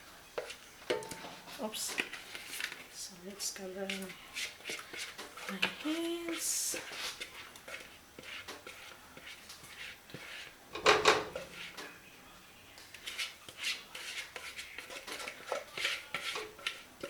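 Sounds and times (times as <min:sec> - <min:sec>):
pot and utensils scraping: 0:00.4 - 0:12.0, 0:12.9 - 0:17.0
pot clattering: 0:10.8 - 0:12.0.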